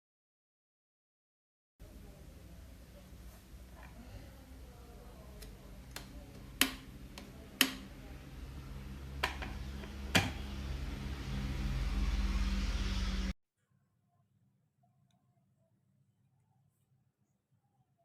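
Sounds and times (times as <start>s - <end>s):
kettle heating water: 1.8s - 13.3s.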